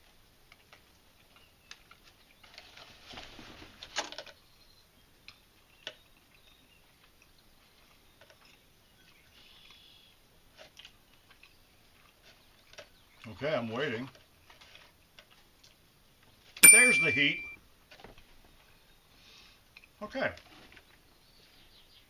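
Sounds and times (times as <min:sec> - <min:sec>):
person chewing food: 0:10.8 - 0:13.0.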